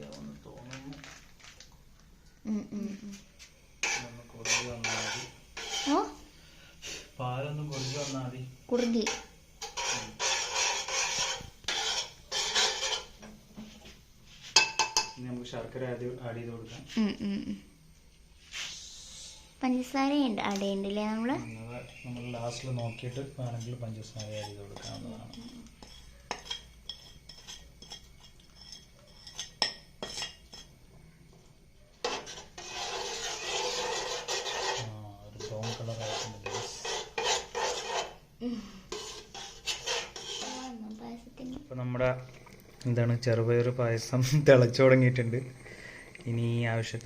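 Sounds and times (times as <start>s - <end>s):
metal spoon scraping pot: 3.8s - 6.2s, 7.6s - 13.9s, 21.4s - 30.8s, 32.0s - 38.2s, 38.9s - 41.0s
metal spoon knocking on pot: 14.6s - 15.2s
spoon clinking against pot: 14.6s - 15.2s, 21.8s - 30.7s.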